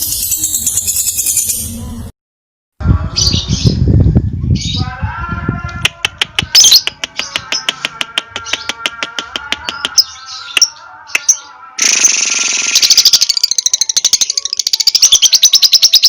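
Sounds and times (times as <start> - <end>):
lovebird chattering trill: 11.8 - 16.0.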